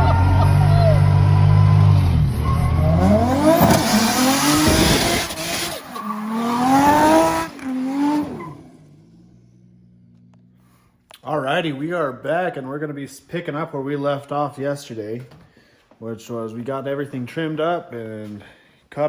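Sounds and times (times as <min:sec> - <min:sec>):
car engine revving: 0:00.0 - 0:10.8.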